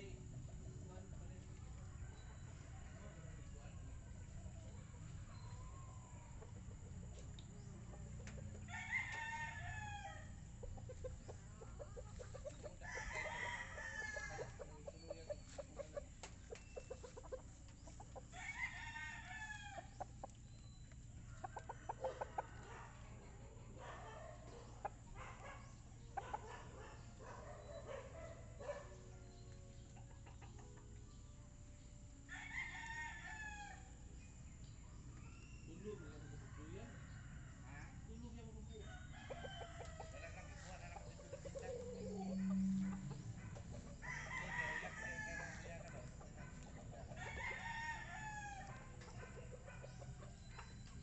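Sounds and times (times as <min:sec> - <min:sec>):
chickens clucking: 0:00.0 - 0:32.2, 0:34.0 - 0:51.0
rooster crowing: 0:08.7 - 0:10.4, 0:12.8 - 0:14.6, 0:36.1 - 0:38.1, 0:41.9 - 0:43.4, 0:44.0 - 0:45.8, 0:47.1 - 0:49.4.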